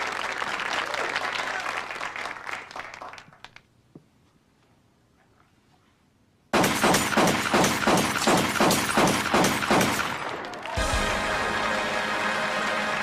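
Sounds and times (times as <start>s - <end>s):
applause: 0.0s - 3.7s, 10.3s - 13.0s
rapid gunshots: 6.5s - 10.7s.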